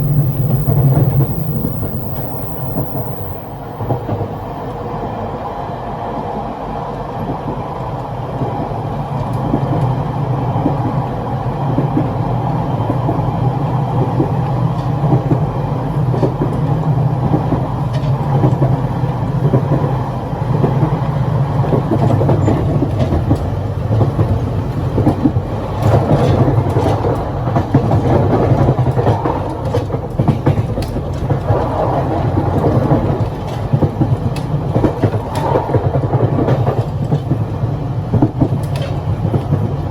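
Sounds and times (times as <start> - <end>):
rattling and wheel clacks: 0.0 - 4.8
train running rumble: 0.0 - 39.9.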